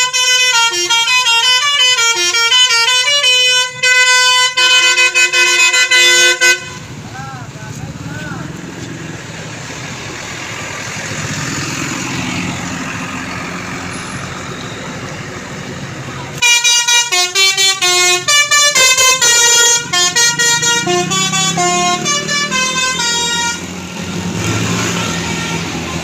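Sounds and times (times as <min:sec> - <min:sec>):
bus horn playing a tune: 0:00.0 - 0:06.9, 0:16.4 - 0:26.0
road traffic: 0:00.0 - 0:26.0.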